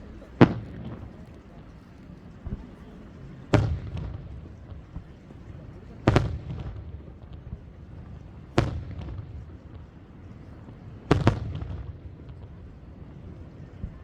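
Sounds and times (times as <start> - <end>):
firework shells booming: 0.4 - 1.1.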